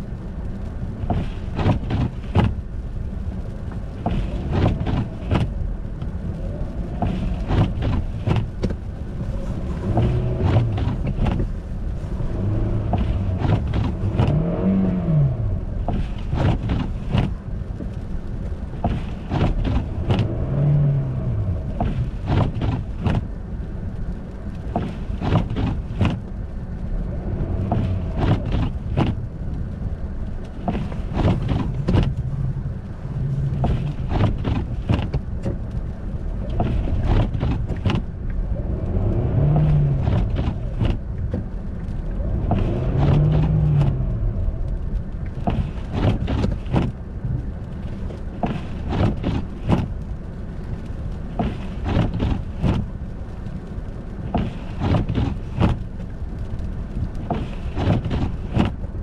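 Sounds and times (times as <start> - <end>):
car driving on icy road: 0.0 - 59.0
car engine: 0.0 - 59.0
sharp knocks and crunches: 1.0 - 2.6, 3.8 - 8.8, 9.4 - 11.6, 12.4 - 17.9, 18.7 - 23.3, 24.6 - 26.3, 27.6 - 29.3, 30.4 - 32.6, 33.2 - 35.8, 36.4 - 38.4, 39.2 - 41.6, 42.2 - 44.3, 45.2 - 50.0, 51.2 - 53.0, 54.2 - 56.1, 57.0 - 59.0.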